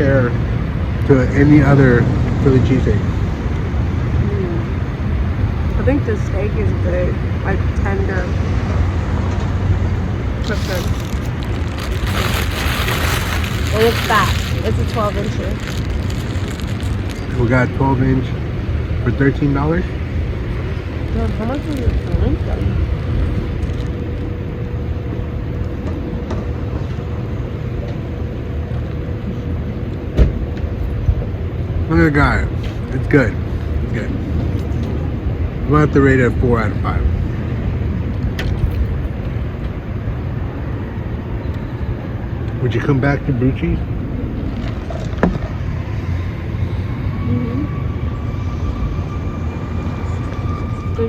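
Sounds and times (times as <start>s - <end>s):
faint constant hum: 0.0s - 51.0s
road traffic rumble: 0.0s - 51.0s.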